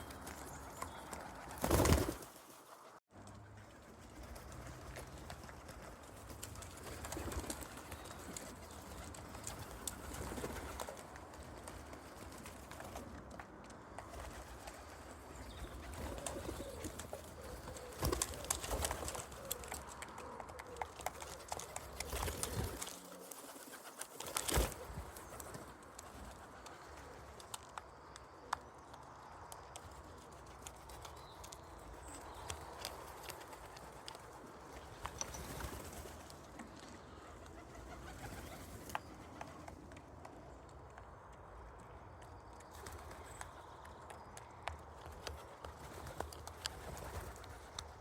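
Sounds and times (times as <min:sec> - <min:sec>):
pigeons cooing: 0:15.4 - 0:25.4.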